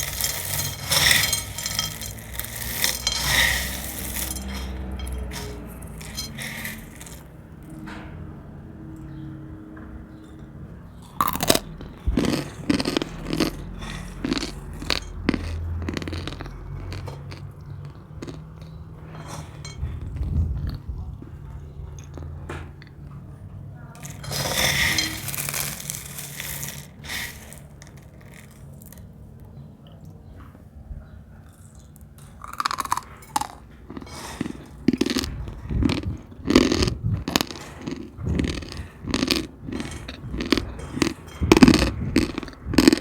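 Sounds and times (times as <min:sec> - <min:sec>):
crunching crisp film: 0:00.0 - 0:07.3, 0:24.0 - 0:29.1
chewing: 0:00.0 - 0:07.4, 0:11.0 - 0:23.2, 0:23.9 - 0:30.6, 0:31.4 - 0:43.0.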